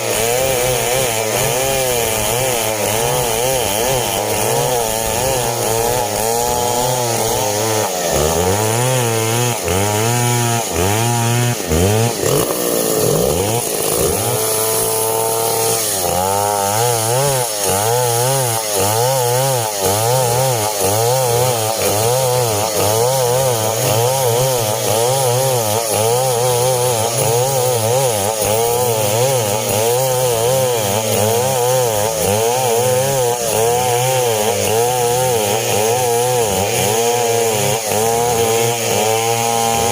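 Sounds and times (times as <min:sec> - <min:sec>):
chainsaw cutting timber: 0:00.0 - 0:39.9.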